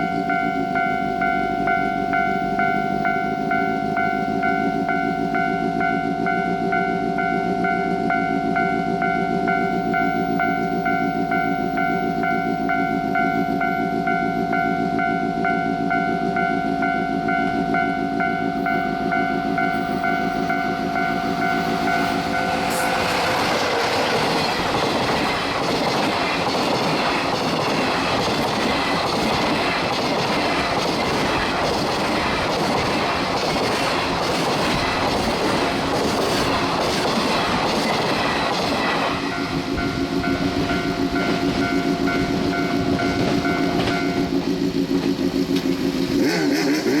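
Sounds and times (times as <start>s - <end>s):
level crossing alarm ringing: 0.0s - 46.0s
freight train speeding past: 0.0s - 47.0s
train wheels clattering: 19.6s - 47.0s.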